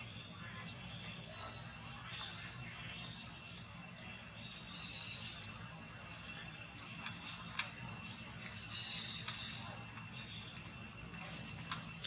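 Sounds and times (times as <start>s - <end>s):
sharp clicks: 7.0s - 7.8s.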